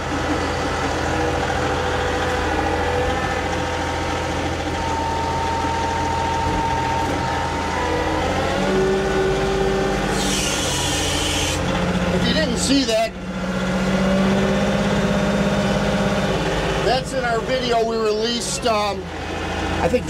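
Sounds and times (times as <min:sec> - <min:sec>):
steady whining tones: 0:00.0 - 0:14.0
tractor diesel engine running: 0:00.0 - 0:20.0.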